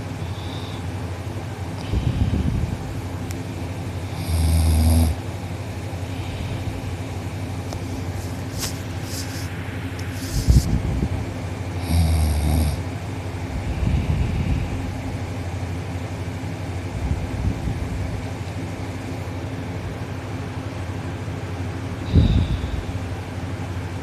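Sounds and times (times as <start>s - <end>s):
boy snoring loudly: 4.1s - 5.2s, 11.8s - 12.8s.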